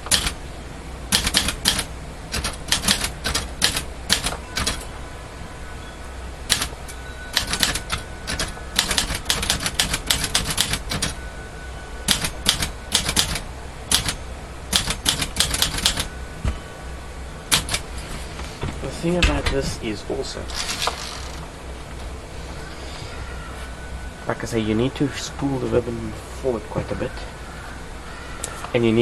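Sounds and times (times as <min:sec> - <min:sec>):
manual typewriter keystrokes: 0:00.0 - 0:00.4, 0:01.1 - 0:04.8, 0:06.5 - 0:11.2, 0:12.1 - 0:16.1, 0:17.5 - 0:17.9.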